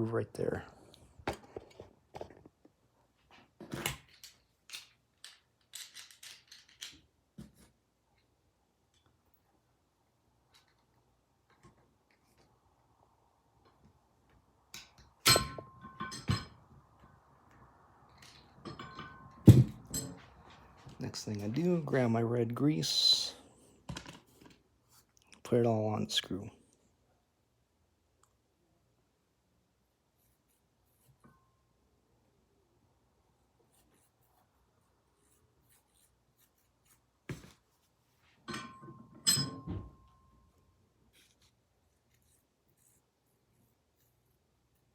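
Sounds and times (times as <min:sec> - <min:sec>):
metal vise parts clanking: 0:15.3 - 0:16.6, 0:18.3 - 0:20.3, 0:38.4 - 0:40.0.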